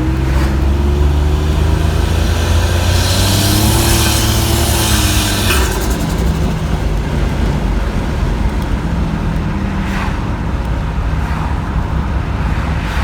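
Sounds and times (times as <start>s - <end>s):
car engine running: 0.0s - 9.4s
road noise: 0.0s - 13.0s.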